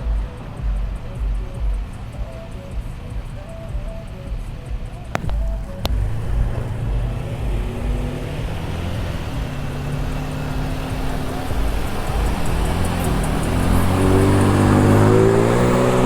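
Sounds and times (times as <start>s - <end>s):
wind rumbling on microphone: 5.1s - 16.0s.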